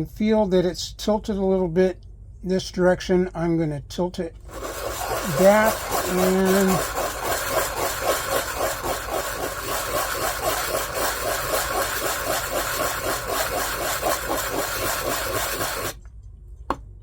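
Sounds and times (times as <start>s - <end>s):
plastic rubbed on sandpaper: 4.5s - 16.0s.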